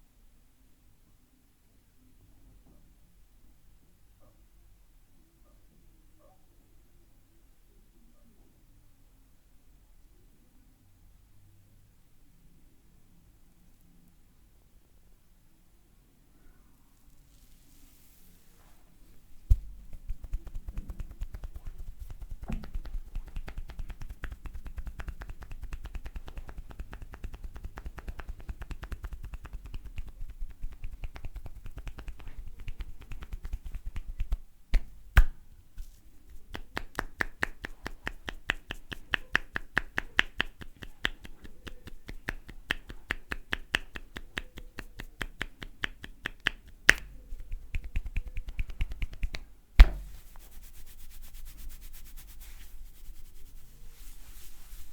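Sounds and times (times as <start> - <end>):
hands popping on head: 19.3 - 50.6
loud cracks of hands: 19.5 - 50.5.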